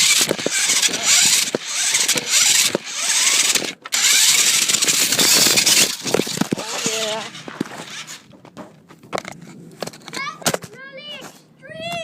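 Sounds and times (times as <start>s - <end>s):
rc car motor and tyres rushing: 0.0s - 8.4s
knocks and rattles from bumps: 0.0s - 11.3s.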